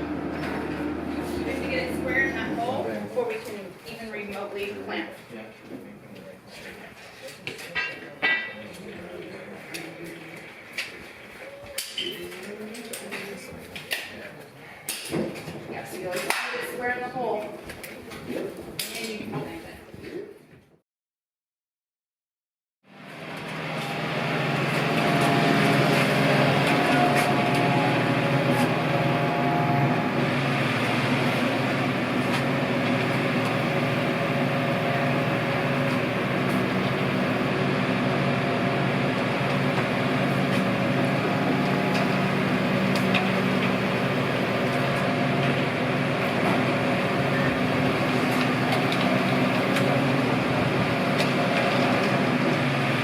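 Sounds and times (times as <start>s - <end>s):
heavy equipment engine running: 0.0s - 3.4s, 22.9s - 53.0s.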